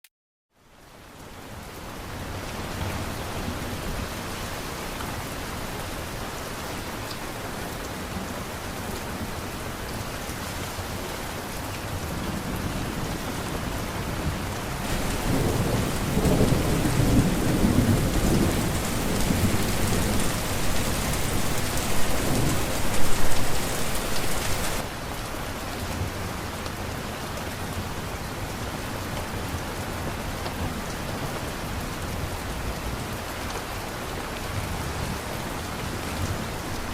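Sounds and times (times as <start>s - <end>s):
heavy rain falling: 0.9s - 36.9s
thunder rumble: 14.8s - 24.9s.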